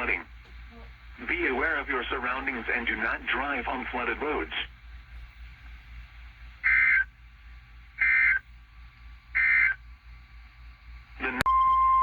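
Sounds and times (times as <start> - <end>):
buzzy two-tone data bursts: 6.6 - 7.0, 8.0 - 8.4, 9.4 - 9.8.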